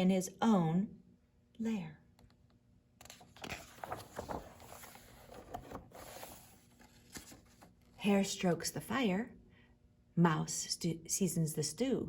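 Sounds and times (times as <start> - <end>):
paper page rustling and crackling: 3.0 - 7.9.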